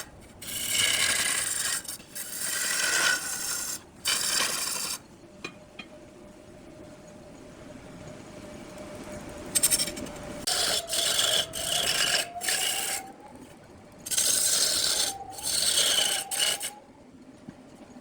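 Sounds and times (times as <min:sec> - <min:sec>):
tool scraping spinning wood: 0:00.0 - 0:05.0, 0:09.6 - 0:13.1, 0:14.1 - 0:16.8.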